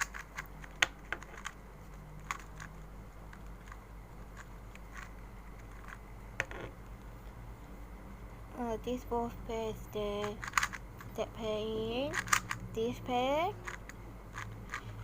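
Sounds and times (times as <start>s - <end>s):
puzzle cube plastic clicks: 0.0s - 6.7s, 10.1s - 11.2s, 12.0s - 15.0s
steady low hum: 0.0s - 15.0s.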